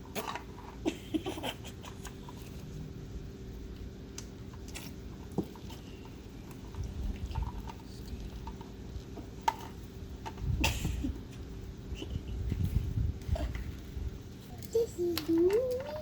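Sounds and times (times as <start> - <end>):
steady low hum: 0.0 - 16.0
electrical tape rustling: 12.4 - 16.0.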